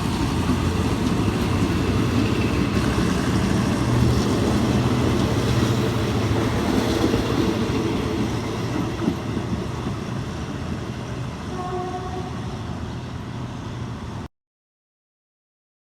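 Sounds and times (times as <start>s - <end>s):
locomotive engine drone: 0.0s - 14.3s
rail rumble: 0.0s - 14.3s.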